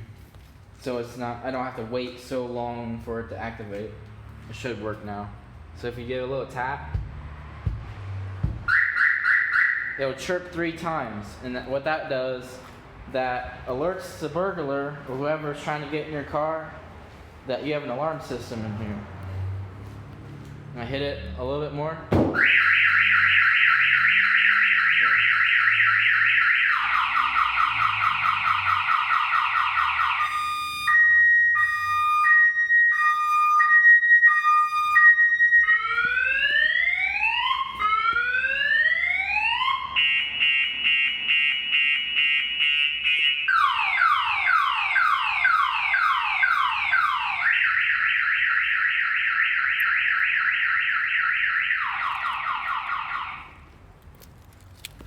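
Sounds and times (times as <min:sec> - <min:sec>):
car alarm siren: 0:08.2 - 0:10.2, 0:22.3 - 0:53.7.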